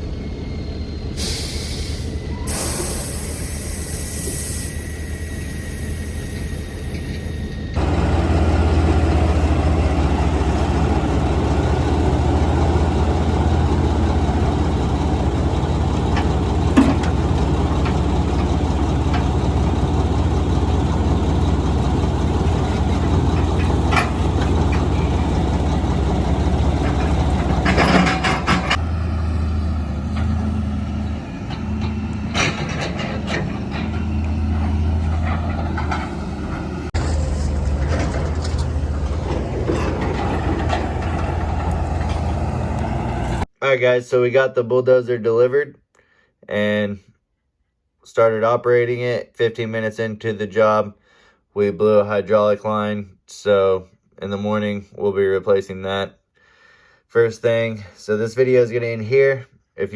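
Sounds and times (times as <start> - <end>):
diesel engine running: 0.0 - 43.5
metallic clanks and knocks: 7.8 - 28.9, 30.0 - 43.4.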